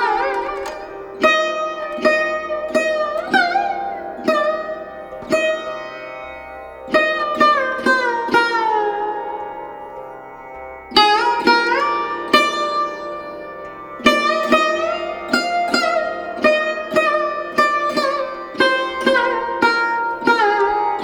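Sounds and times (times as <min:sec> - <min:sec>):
plucked string instrument: 0:00.0 - 0:21.0.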